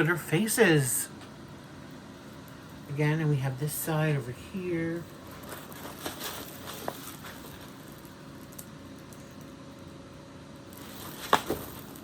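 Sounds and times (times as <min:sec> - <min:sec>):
low room hum: 0:00.0 - 0:12.0
soft handling rustling: 0:05.0 - 0:08.6.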